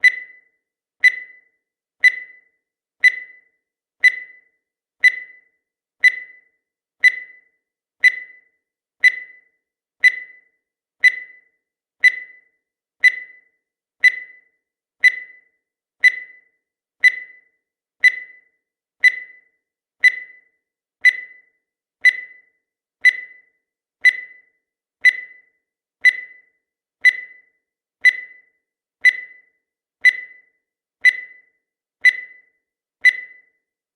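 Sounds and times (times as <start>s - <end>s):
high-pitched timer beeps: 0.0s - 33.8s.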